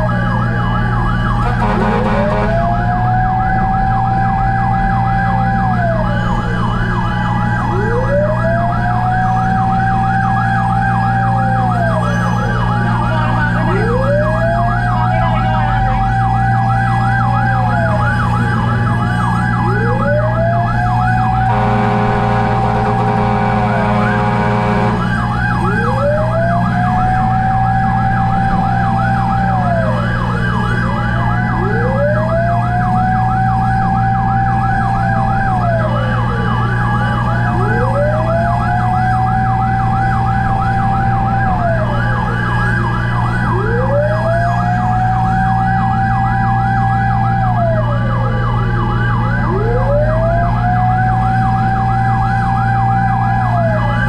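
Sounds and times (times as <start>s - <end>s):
fast siren yelp: 0.0s - 54.0s
fire truck siren wail: 0.0s - 54.0s
engine drone: 0.9s - 5.9s, 11.7s - 32.4s
horn blast: 1.4s - 3.0s, 21.4s - 25.4s.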